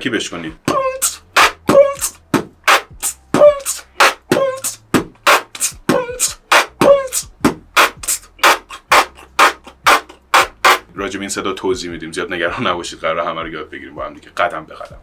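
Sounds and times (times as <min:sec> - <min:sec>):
beatbox hummed tones: 0:00.5 - 0:11.0
beatboxing percussion: 0:00.5 - 0:11.0.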